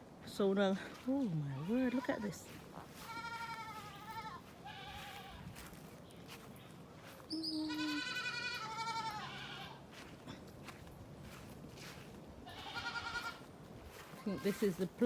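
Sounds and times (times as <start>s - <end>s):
goat bleating: 1.5s - 5.6s, 7.4s - 9.9s, 12.4s - 14.8s.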